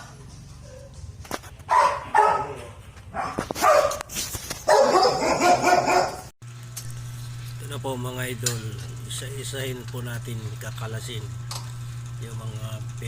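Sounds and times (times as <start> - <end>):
dog barking: 1.7 - 6.3.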